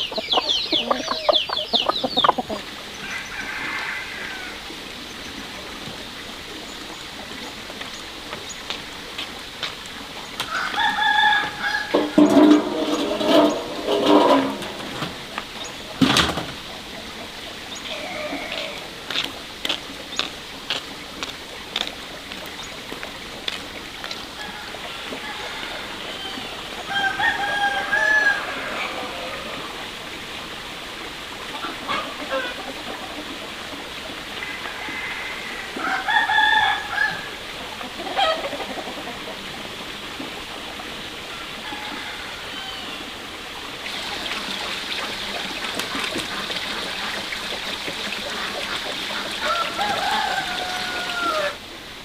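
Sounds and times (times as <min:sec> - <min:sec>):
rooster crowing: 0:03.0 - 0:04.6, 0:10.5 - 0:13.0, 0:24.4 - 0:29.7, 0:34.4 - 0:37.4, 0:41.6 - 0:43.0, 0:49.4 - 0:51.6.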